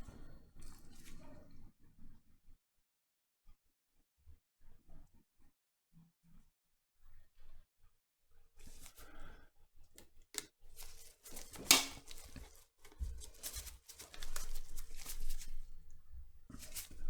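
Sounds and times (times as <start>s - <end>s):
rustling and handling noises: 8.6s - 9.2s, 10.0s - 17.0s.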